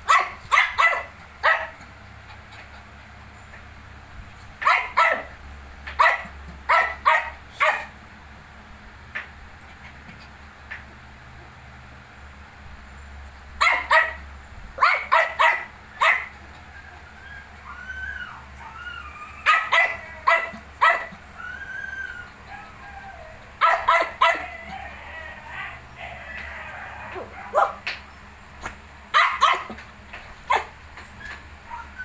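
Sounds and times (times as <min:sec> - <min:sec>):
puppies yipping: 0:00.0 - 0:02.9, 0:04.6 - 0:05.3, 0:06.0 - 0:07.9, 0:13.6 - 0:32.0
puppies whimpering: 0:16.0 - 0:28.0, 0:30.5 - 0:32.0.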